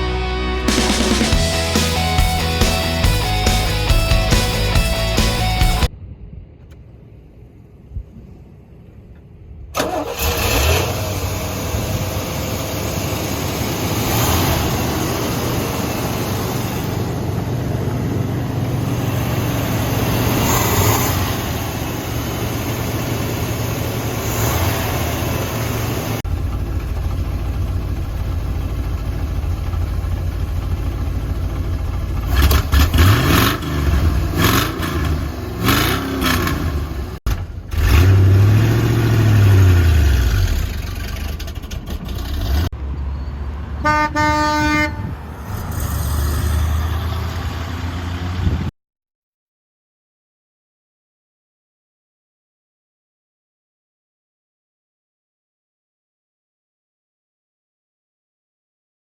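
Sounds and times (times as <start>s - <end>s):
car engine starting and idling: 0.0s - 42.7s
car engine revving: 9.8s - 30.7s, 31.3s - 42.7s.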